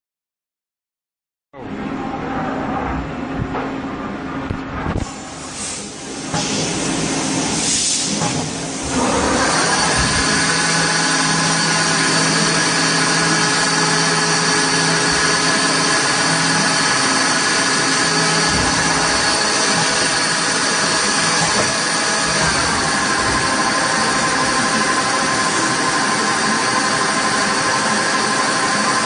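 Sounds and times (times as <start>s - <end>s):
lathe machine whine: 8.7s - 29.0s.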